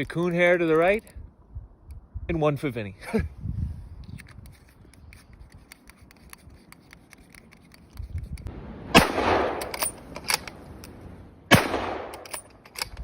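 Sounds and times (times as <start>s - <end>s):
rifle shot with echo: 8.9s - 10.0s, 11.5s - 12.5s.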